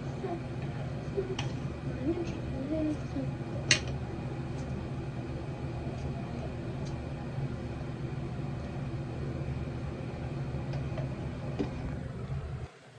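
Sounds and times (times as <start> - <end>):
low mechanical hum: 0.0 - 12.9.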